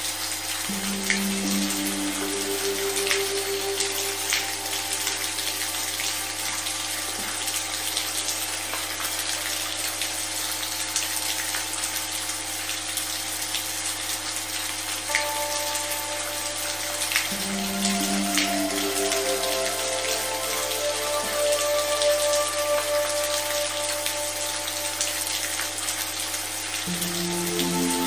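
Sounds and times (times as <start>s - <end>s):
steady rain: 0.0s - 28.0s
low electronic tone: 0.7s - 6.7s, 15.1s - 25.8s, 26.9s - 28.0s
soft synth notes: 0.7s - 10.2s, 15.1s - 28.0s.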